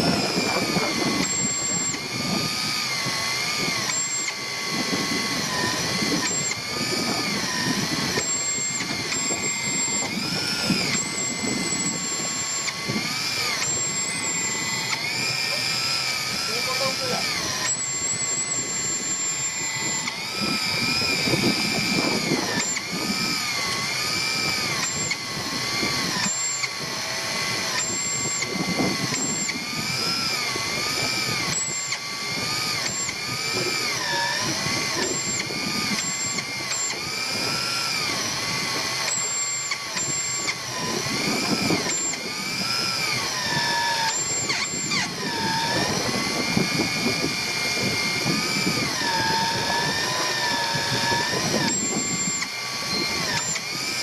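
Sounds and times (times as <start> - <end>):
small motor whining: 0.0 - 54.0
short high clicks: 49.0 - 53.7.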